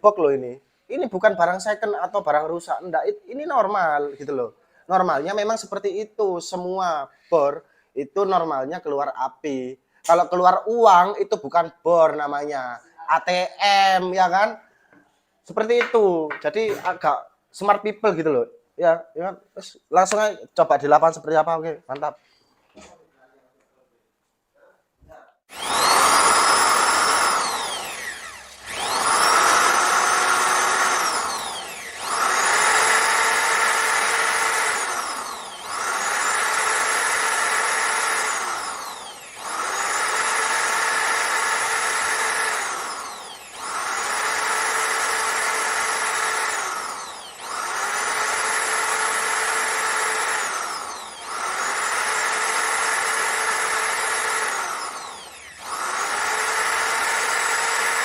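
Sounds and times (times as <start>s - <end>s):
electric motor whining: 25.5s - 58.0s.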